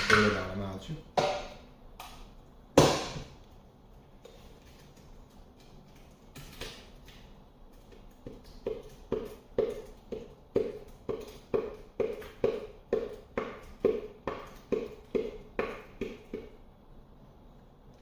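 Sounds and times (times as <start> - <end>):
sharp knock: 2.8 - 3.3.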